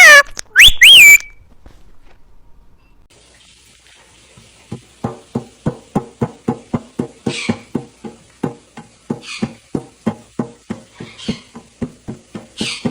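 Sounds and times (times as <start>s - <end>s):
short rhythmic knocks: 4.7s - 12.9s.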